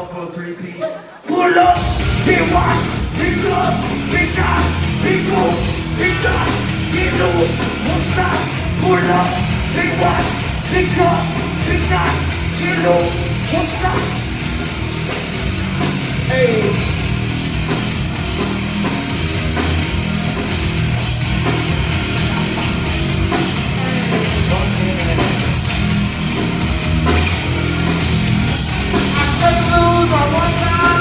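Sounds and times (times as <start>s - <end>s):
heavy distorted guitars: 0.0s - 31.0s
pounding drums: 0.6s - 31.0s
bass guitar: 1.8s - 31.0s.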